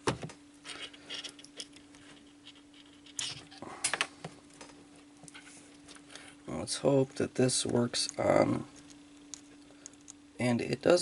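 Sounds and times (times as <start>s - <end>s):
faint steady hum: 0.0s - 11.0s
plastic parts clicking and rattling: 0.6s - 5.4s.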